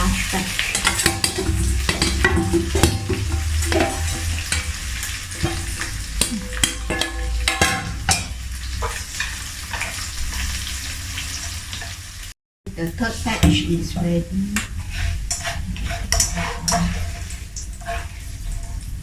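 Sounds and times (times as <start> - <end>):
spatula scraping a pan: 0.0 - 12.0, 13.1 - 19.0
fish sizzling in hot oil: 0.0 - 12.4, 13.8 - 19.0
steady low hum: 0.8 - 8.4.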